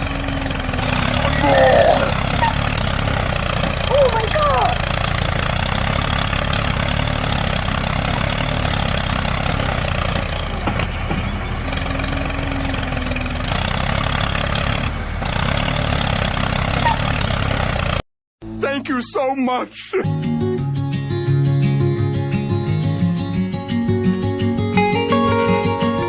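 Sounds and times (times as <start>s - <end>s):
truck engine idling: 0.0s - 18.0s.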